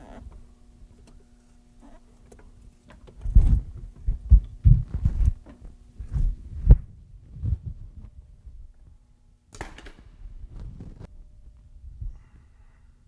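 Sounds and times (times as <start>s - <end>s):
faint steady hum: 0.0s - 13.0s
dull low thumps and knocks: 3.2s - 5.4s.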